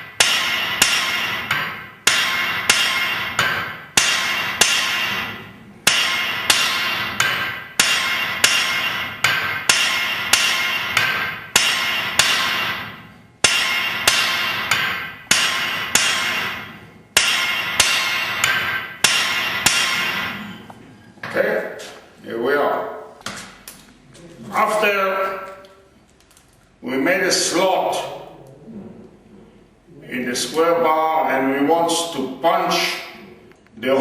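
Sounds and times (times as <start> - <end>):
hammer ringing on anvil: 0.0 - 20.6.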